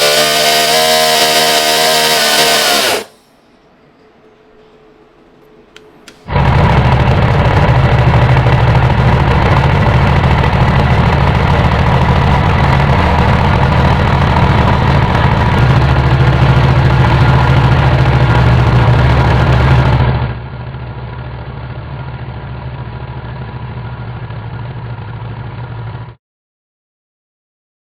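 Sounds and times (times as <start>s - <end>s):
model nitro engine running: 0.0s - 3.2s, 6.3s - 20.1s.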